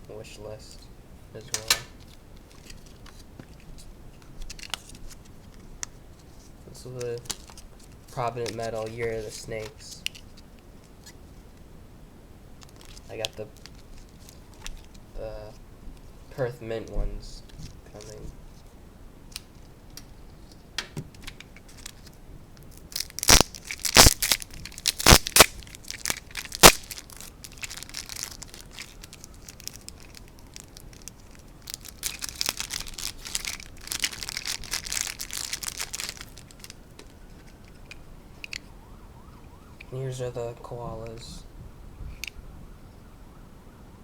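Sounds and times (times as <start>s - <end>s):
packaging crinkling and rustling: 1.4s - 11.6s, 12.6s - 15.2s, 16.8s - 18.7s, 19.3s - 38.7s
packaging tearing: 12.6s - 15.0s, 21.2s - 36.8s.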